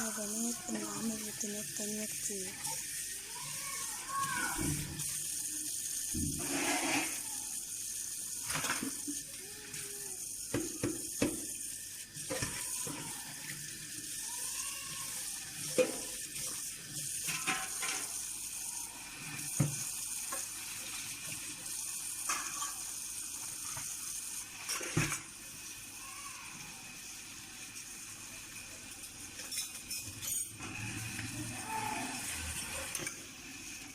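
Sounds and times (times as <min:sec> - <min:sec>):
tap running into sink: 0:10.5 - 0:11.6, 0:19.4 - 0:20.5
dishes and utensils clinking: 0:17.2 - 0:18.2, 0:22.2 - 0:22.9, 0:29.2 - 0:30.8.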